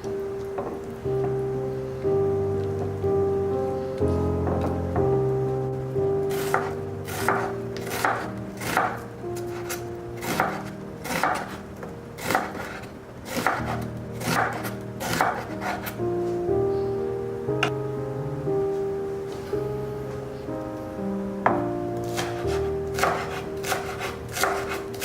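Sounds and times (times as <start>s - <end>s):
knife chopping on cutting board: 6.3s - 9.0s, 9.6s - 11.6s, 12.2s - 15.8s, 22.1s - 24.9s.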